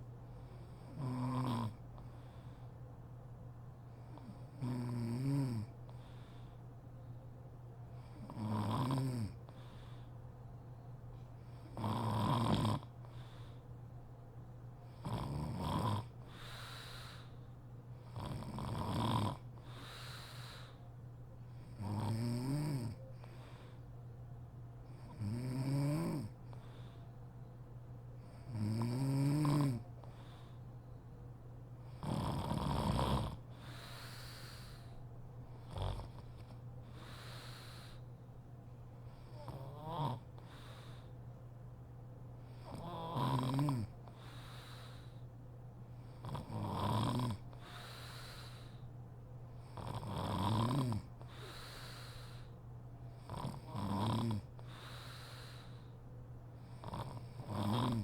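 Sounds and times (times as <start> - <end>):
woman snoring: 0.6 - 1.8, 4.1 - 5.7, 8.1 - 9.4, 11.6 - 12.9, 15.0 - 16.8, 18.0 - 20.7, 21.7 - 23.0, 25.0 - 26.3, 28.4 - 29.8, 32.0 - 34.9, 35.6 - 36.3, 39.3 - 40.2, 42.6 - 43.9, 46.2 - 48.7, 49.7 - 52.5, 53.2 - 55.0, 56.7 - 58.0.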